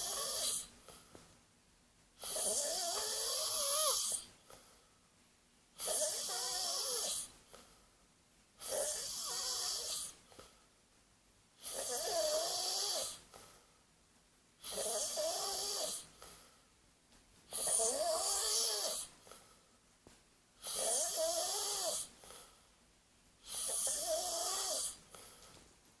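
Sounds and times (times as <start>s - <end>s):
heavy snoring: 0.0s - 0.7s, 2.2s - 4.3s, 5.8s - 7.3s, 8.6s - 10.2s, 11.6s - 13.2s, 14.6s - 16.3s, 17.5s - 19.4s, 20.6s - 22.4s, 23.4s - 25.4s.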